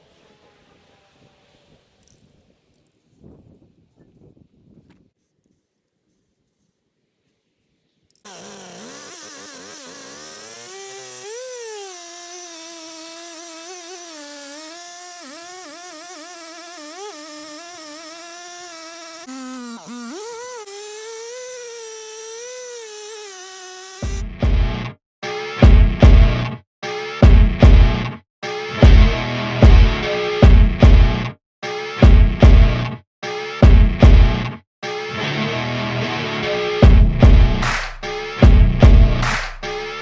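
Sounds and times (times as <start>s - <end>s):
chainsaw cutting wood: 8.2s - 24.2s, 39.2s - 40.0s.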